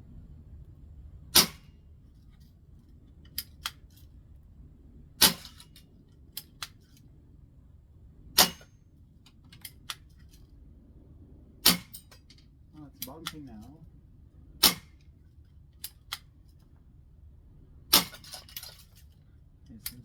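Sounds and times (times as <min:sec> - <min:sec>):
bb pistol shots popping: 0:01.4 - 0:01.6, 0:11.6 - 0:12.0, 0:14.6 - 0:15.0.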